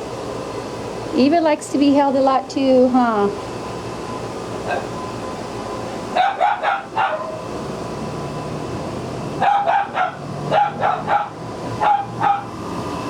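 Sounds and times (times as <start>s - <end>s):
steady background hum: 0.0s - 13.0s
small dogs yapping: 4.6s - 5.0s, 6.2s - 7.6s, 9.4s - 12.6s.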